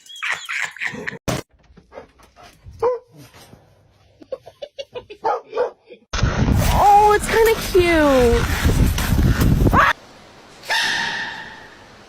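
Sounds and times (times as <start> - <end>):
dog barking: 2.8 - 3.2, 5.2 - 5.8.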